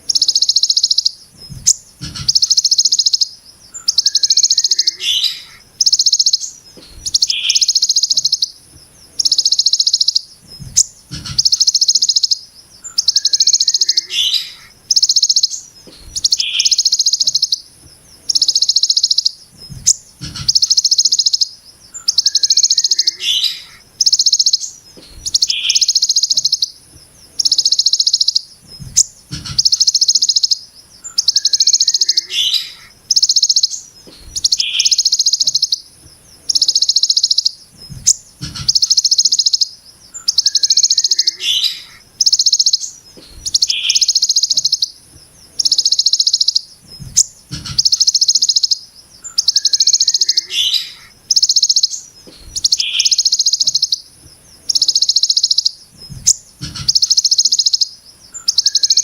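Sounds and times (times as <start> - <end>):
bird harsh rattling buzz: 0.0 - 17.6
short lower bird chirps: 0.0 - 59.0.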